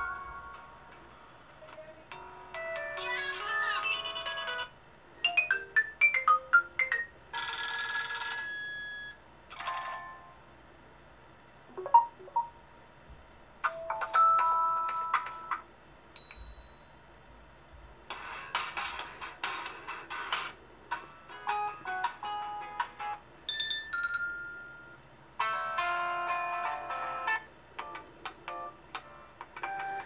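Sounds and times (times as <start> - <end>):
smartphone ringtones and alert tones: 11.7 - 12.6.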